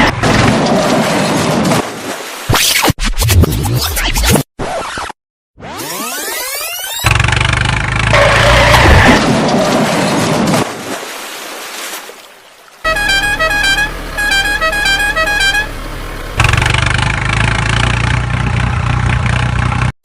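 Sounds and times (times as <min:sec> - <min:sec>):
engine running: 0:07.0 - 0:10.0, 0:12.9 - 0:19.9
musical vehicle horn tune: 0:12.8 - 0:15.9.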